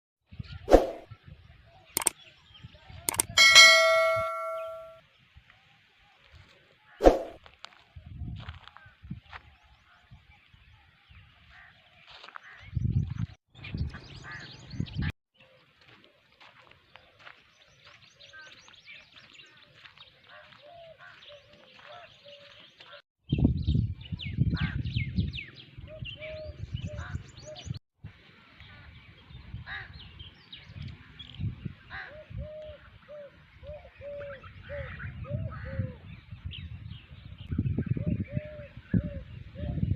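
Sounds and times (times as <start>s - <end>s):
birds chirping and calling: 8.7s - 27.8s, 28.6s - 39.9s.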